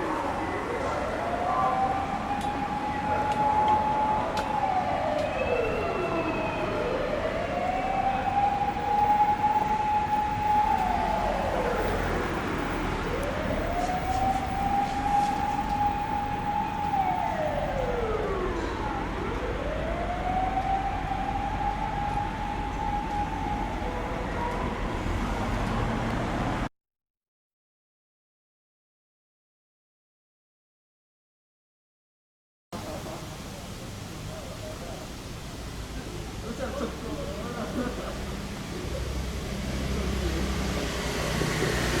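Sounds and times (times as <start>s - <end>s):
fire engine siren wailing: 0.0s - 26.7s, 36.4s - 42.0s
road and engine rumble: 0.0s - 26.7s, 32.8s - 42.0s.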